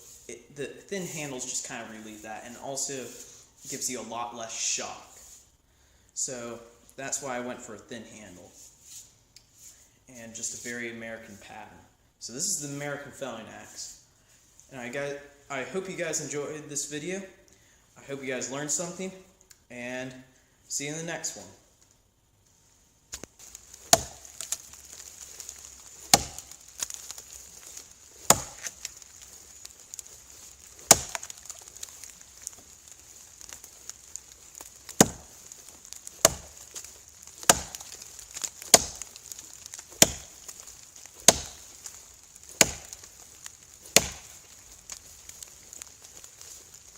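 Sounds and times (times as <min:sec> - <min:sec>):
axe chopping wood: 0:23.8 - 0:29.2, 0:29.9 - 0:32.2, 0:34.6 - 0:44.5.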